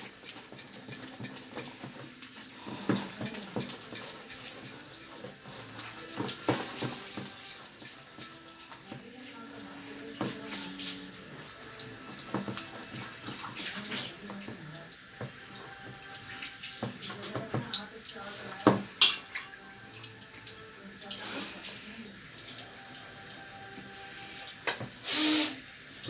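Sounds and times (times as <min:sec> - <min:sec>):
insect chirping trill: 0:00.0 - 0:26.0.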